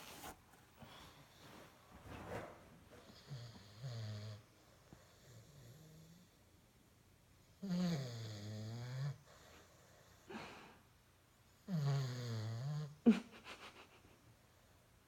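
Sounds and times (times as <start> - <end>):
pitched snores: 3.2 - 4.4, 7.6 - 9.3, 11.7 - 13.0
faint breath: 9.3 - 10.9.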